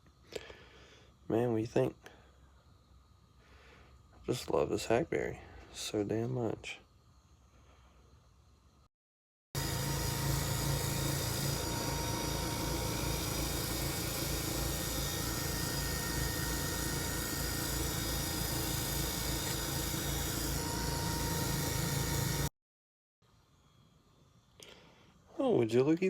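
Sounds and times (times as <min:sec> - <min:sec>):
wood lathe motor humming: 0:09.6 - 0:22.5.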